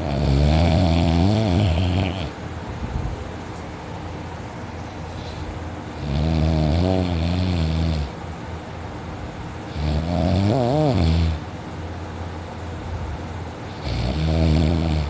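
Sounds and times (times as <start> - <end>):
person snoring: 0.0 - 2.4, 6.0 - 8.1, 9.7 - 11.4, 13.8 - 15.0
low steady hum: 0.0 - 15.0.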